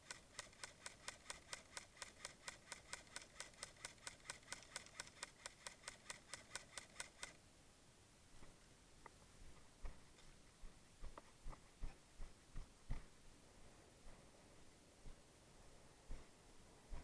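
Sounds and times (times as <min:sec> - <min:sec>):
sharp evenly spaced clicks: 0:00.0 - 0:07.4.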